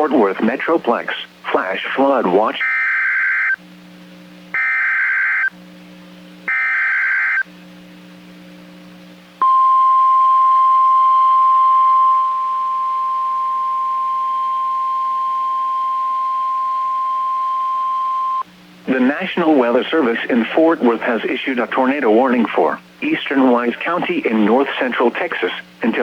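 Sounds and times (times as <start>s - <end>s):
steady warning alarm tone: 2.6s - 3.6s, 4.6s - 5.5s, 6.5s - 7.5s, 9.4s - 18.4s.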